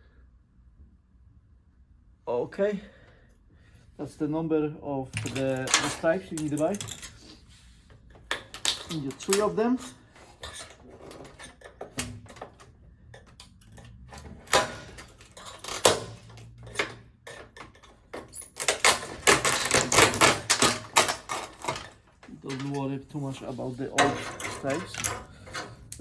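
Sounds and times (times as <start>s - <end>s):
clattering thin metal strips: 5.2s - 7.5s, 8.3s - 26.0s.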